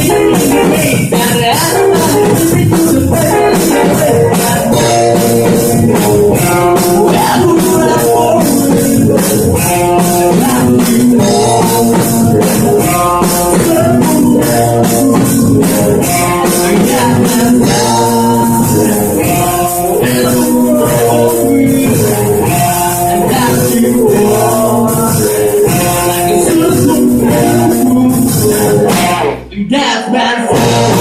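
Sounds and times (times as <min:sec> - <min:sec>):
drum kit steady beat: 0:00.0 - 0:29.5, 0:30.5 - 0:31.0
electric guitar: 0:00.0 - 0:31.0.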